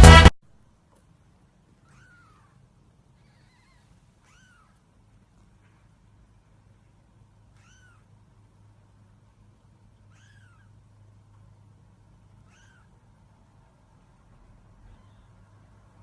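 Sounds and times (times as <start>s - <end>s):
cat mewing: 1.8s - 5.0s, 7.5s - 8.2s, 10.0s - 10.9s, 12.4s - 13.2s, 14.8s - 15.6s.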